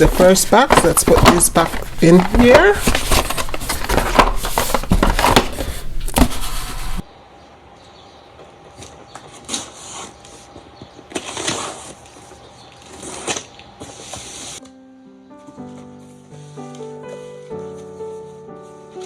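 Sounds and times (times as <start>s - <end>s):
cardboard box being handled: 0.0s - 7.1s.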